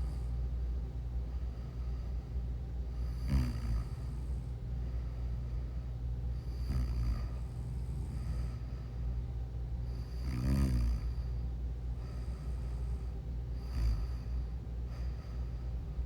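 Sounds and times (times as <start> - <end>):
steady low hum: 0.0 - 16.0
person snoring: 3.2 - 4.1, 6.5 - 8.4, 10.0 - 11.2.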